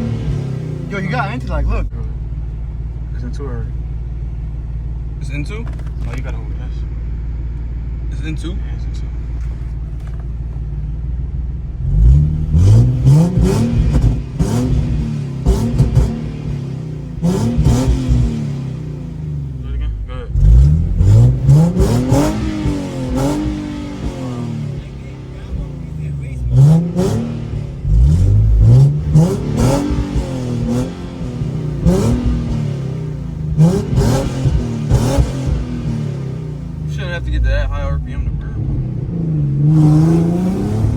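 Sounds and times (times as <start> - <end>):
car engine idling and revving: 0.0 - 40.9
exhaust pops: 5.2 - 7.0, 7.6 - 11.0, 11.8 - 40.9
exhaust cracks and pops: 5.4 - 6.6, 9.2 - 10.8.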